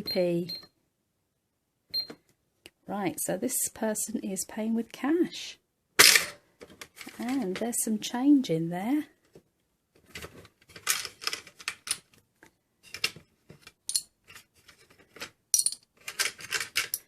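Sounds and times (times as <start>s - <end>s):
toy coins clattering: 13.9s - 14.1s, 15.5s - 17.0s.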